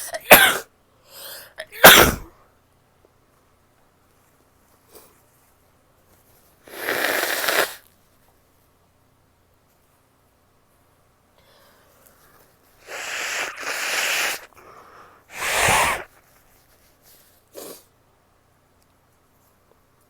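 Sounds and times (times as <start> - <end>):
woman sneezing: 0.0 - 0.7, 1.6 - 2.3, 12.9 - 14.5, 15.3 - 16.1.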